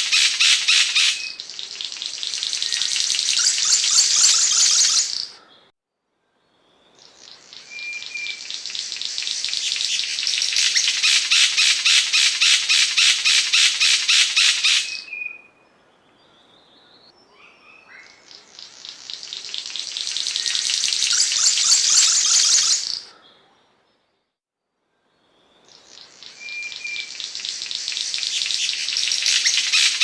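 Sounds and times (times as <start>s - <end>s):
bird giving harsh rattling trill: 19.6s - 23.0s, 27.4s - 30.0s.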